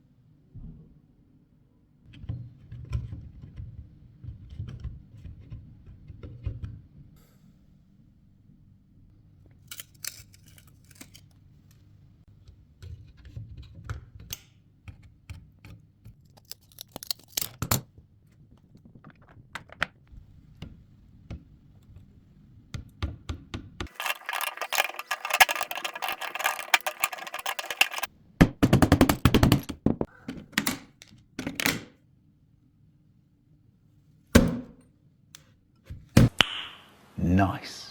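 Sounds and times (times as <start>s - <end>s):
computer hardware clicks and knocks: 23.8s - 30.1s.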